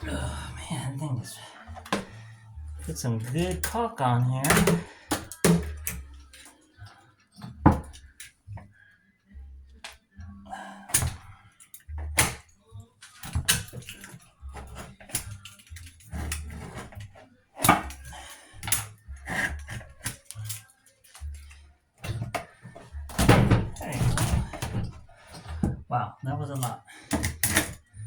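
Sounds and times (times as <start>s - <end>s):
tool prying at old caulk: 4.4s - 6.1s, 13.2s - 20.6s, 21.2s - 25.8s, 26.6s - 27.8s.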